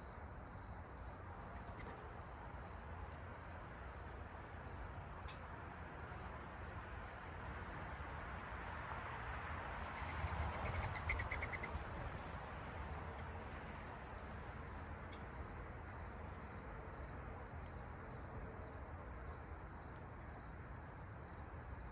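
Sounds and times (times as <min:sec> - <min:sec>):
high-pitched insect chirring: 0:10.0 - 0:12.2.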